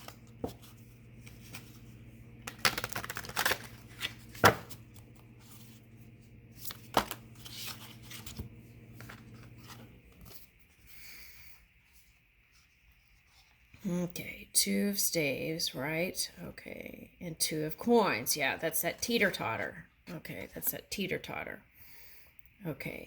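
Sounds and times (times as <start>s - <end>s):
cards shuffling and slapping: 0.0s - 5.8s, 6.5s - 10.5s
steady low hum: 0.0s - 12.8s.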